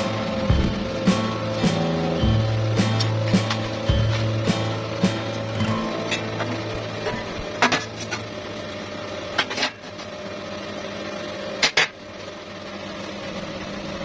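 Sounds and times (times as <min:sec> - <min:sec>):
small motor humming: 0:00.0 - 0:09.4.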